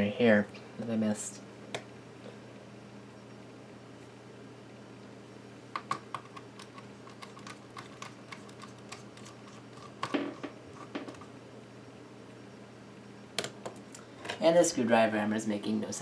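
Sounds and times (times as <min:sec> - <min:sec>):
laptop parts clicking and tapping: 0:05.7 - 0:11.3, 0:13.4 - 0:13.8.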